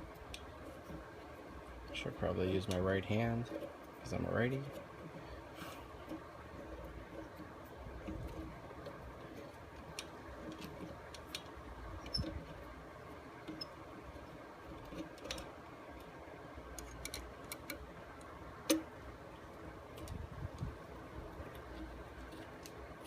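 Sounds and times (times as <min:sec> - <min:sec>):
hex key clicking on screws: 0:16.7 - 0:18.9.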